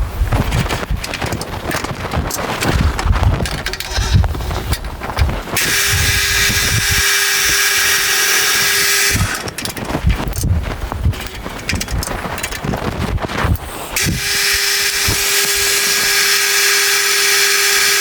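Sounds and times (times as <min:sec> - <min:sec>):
drill cutting steel: 0:02.7 - 0:09.8, 0:14.0 - 0:18.0.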